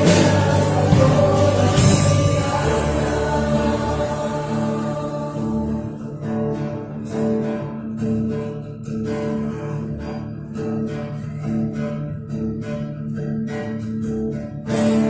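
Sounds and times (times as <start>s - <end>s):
sustained low notes: 0.0s - 6.7s
strummed acoustic guitar: 0.0s - 15.0s.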